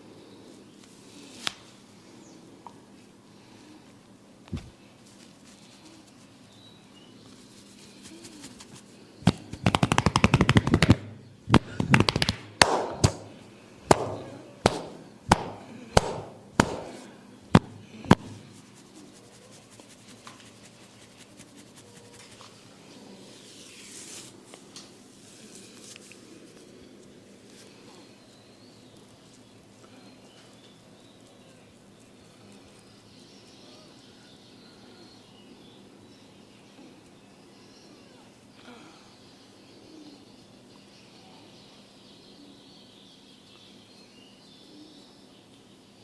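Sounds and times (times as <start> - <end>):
hand tapping on head: 9.2 - 13.3, 13.9 - 18.4
sharp slaps: 9.2 - 18.4.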